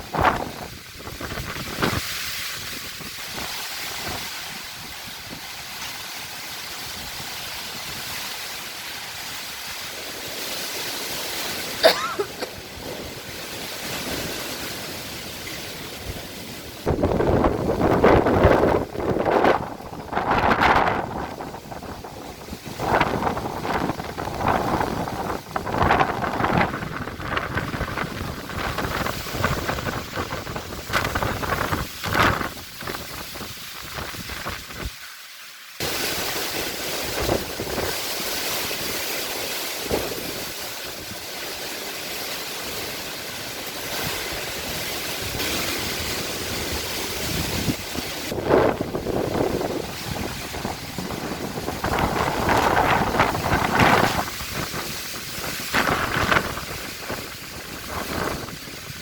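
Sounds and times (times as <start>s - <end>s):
wind gusting on microphone: 0.0s - 35.0s, 35.8s - 41.7s, 42.6s - 59.0s
wind-driven rain hissing: 0.0s - 59.0s.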